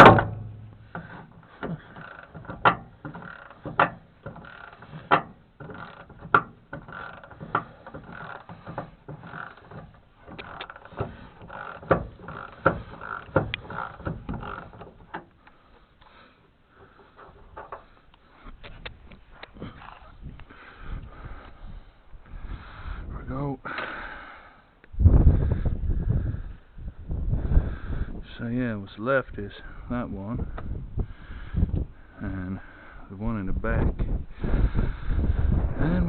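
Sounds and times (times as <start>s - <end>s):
ratchet wrench pawl rattling: 0.8s - 15.3s.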